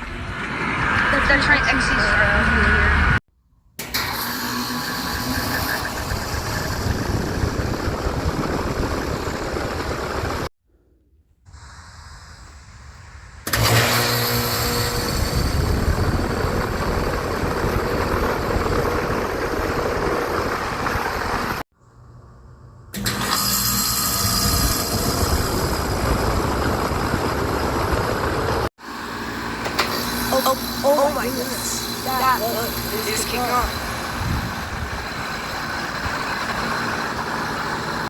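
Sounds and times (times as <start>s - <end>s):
hvac fans whooshing drone: 4.1s - 10.5s, 13.4s - 21.6s, 23.9s - 38.0s.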